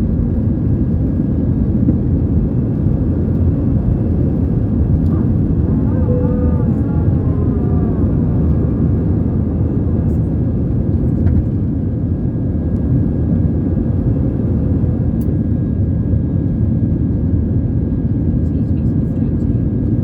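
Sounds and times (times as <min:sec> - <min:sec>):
airplane cabin engine noise: 0:00.0 - 0:20.0
faint high whine: 0:05.0 - 0:10.9
person speaking: 0:05.1 - 0:08.8.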